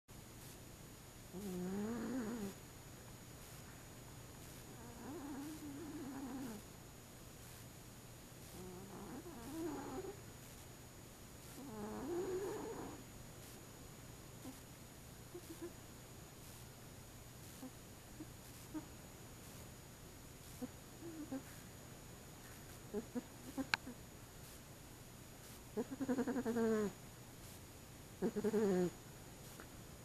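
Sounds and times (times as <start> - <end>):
cat snoring: 1.3 - 2.6, 4.7 - 6.6, 8.5 - 10.2, 11.5 - 13.0, 20.6 - 21.6, 25.8 - 27.0, 28.2 - 29.0.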